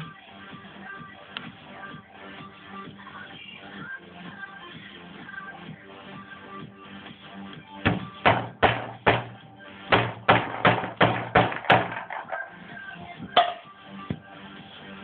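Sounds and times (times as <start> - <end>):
background music: 0.0 - 15.0
sharp bangs: 7.9 - 12.6.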